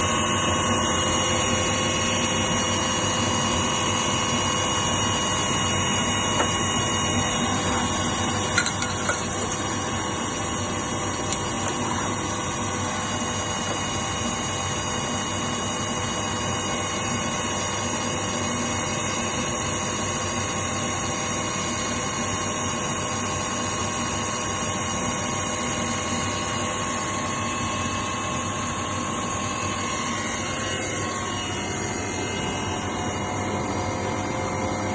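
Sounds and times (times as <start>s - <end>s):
machine tool humming and whining: 0.0s - 34.9s
coolant washing: 7.3s - 10.3s.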